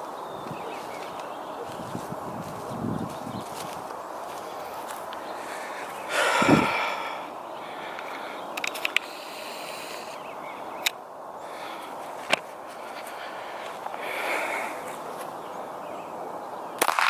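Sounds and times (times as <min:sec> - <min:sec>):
small clicks: 0:08.0 - 0:09.2
handgun blast: 0:16.8 - 0:17.0
sharp cracks: 0:16.8 - 0:17.0.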